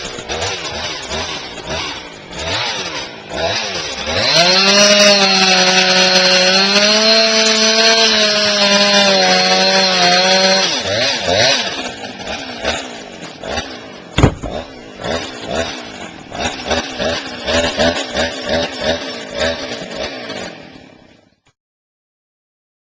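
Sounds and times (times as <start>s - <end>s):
chainsaw cutting wood: 0.0s - 21.5s
sharp knock: 14.2s - 14.7s.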